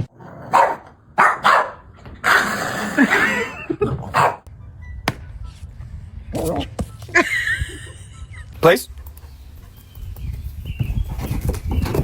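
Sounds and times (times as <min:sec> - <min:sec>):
dog barking: 0:00.5 - 0:01.9, 0:04.1 - 0:04.5.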